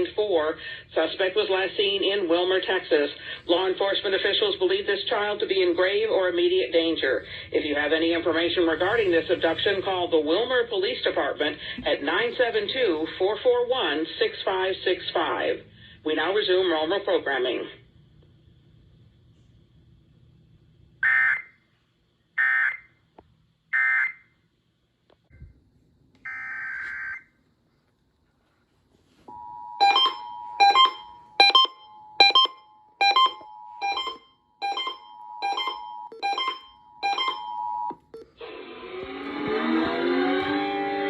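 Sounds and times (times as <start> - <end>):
sharp beeps: 29.3 - 38.3
two-tone attention signal: 29.3 - 38.3.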